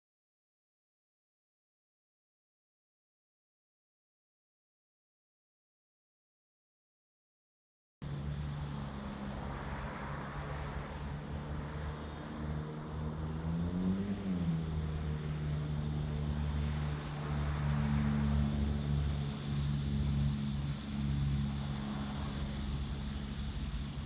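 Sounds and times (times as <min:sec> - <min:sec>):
engine running steadily: 0:08.0 - 0:24.0.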